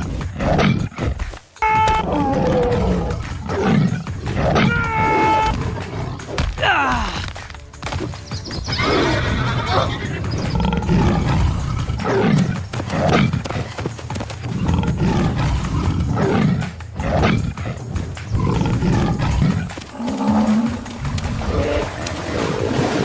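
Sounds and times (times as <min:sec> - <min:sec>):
large animal calling: 0:00.0 - 0:07.3.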